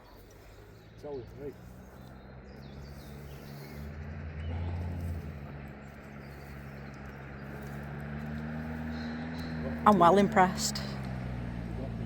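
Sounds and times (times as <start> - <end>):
low engine hum: 0.0 - 12.0
faint bird chirps: 0.1 - 5.2.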